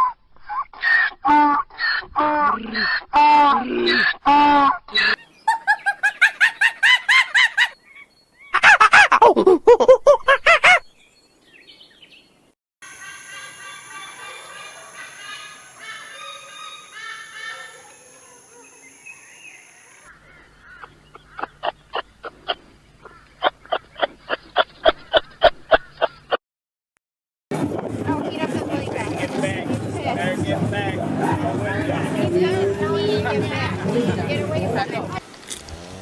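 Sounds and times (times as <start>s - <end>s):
birds calling: 4.9s - 9.3s, 9.9s - 26.4s.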